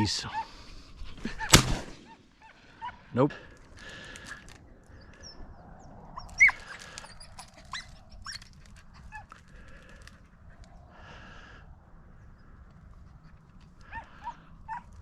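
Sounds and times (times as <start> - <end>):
dogs yipping: 0.0 - 3.1, 6.1 - 10.8, 12.7 - 15.0.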